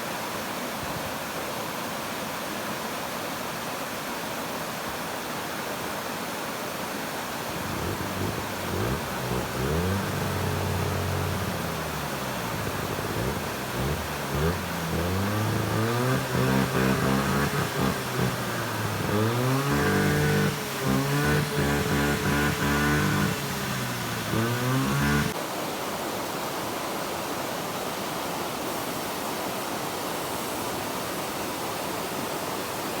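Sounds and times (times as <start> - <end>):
waterfall rushing: 7.0 - 26.6
motor engine revving: 7.5 - 25.4.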